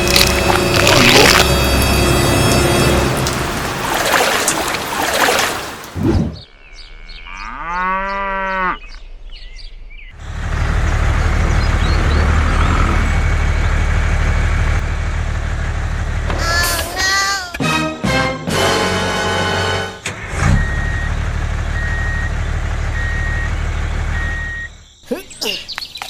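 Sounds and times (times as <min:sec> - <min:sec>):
low engine drone: 0:00.0 - 0:05.9, 0:10.2 - 0:16.5
cow mooing: 0:06.8 - 0:08.9.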